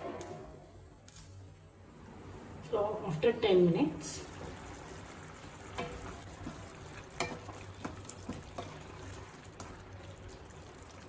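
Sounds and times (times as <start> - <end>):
gravy sizzling in a pan: 4.1 - 11.0.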